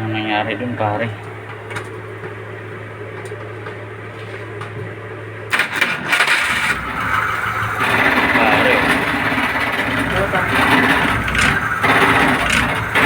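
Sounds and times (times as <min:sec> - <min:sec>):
engine cranking and starting: 0:05.5 - 0:13.0.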